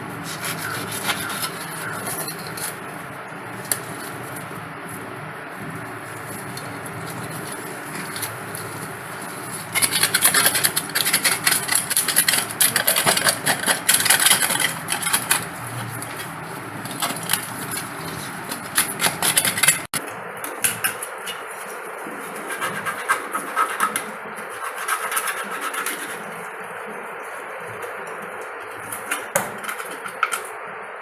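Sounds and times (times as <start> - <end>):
knife scraping fish: 0.2 - 2.8, 6.3 - 19.9, 22.3 - 26.4.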